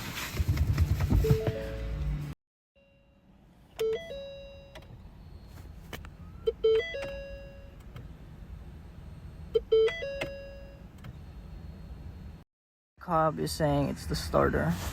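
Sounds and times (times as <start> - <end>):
car warning chimes: 2.8 - 12.2.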